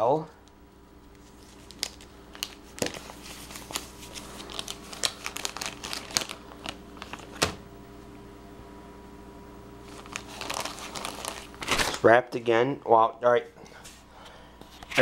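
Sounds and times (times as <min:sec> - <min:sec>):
wrapper crinkling: 0:01.0 - 0:07.4, 0:09.8 - 0:12.1
wrapper ripping: 0:01.1 - 0:07.4, 0:09.8 - 0:12.1.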